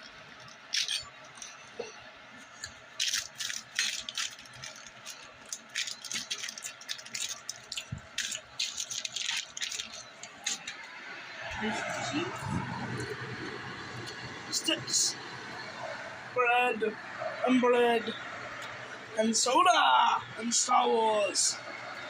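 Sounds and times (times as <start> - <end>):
packaging crinkling: 2.6 - 10.8.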